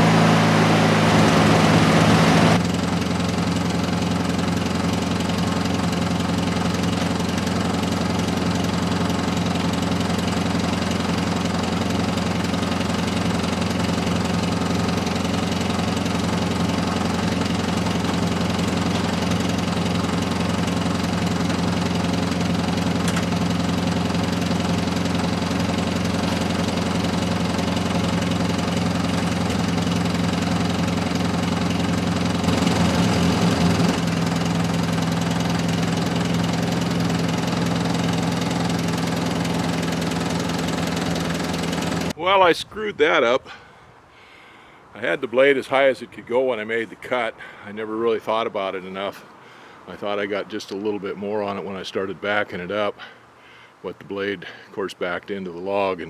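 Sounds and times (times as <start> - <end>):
gasoline engine running: 0.0 - 42.2.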